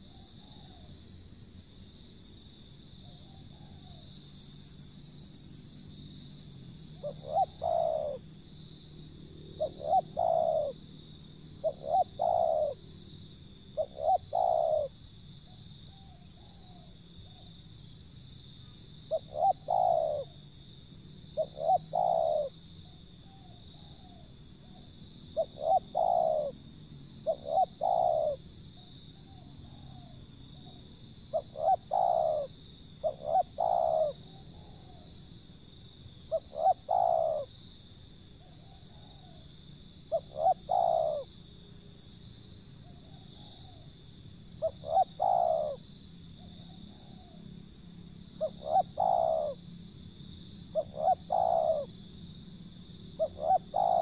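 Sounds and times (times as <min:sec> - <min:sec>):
dove cooing: 0:00.0 - 0:01.0, 0:03.0 - 0:04.1, 0:07.0 - 0:08.3, 0:09.5 - 0:10.9, 0:11.6 - 0:12.9, 0:13.7 - 0:17.5, 0:19.1 - 0:20.5, 0:21.3 - 0:26.6, 0:27.2 - 0:35.2, 0:36.3 - 0:37.6, 0:38.4 - 0:41.4, 0:42.8 - 0:43.9, 0:44.6 - 0:47.4, 0:48.3 - 0:49.7, 0:50.6 - 0:52.1, 0:53.2 - 0:54.0.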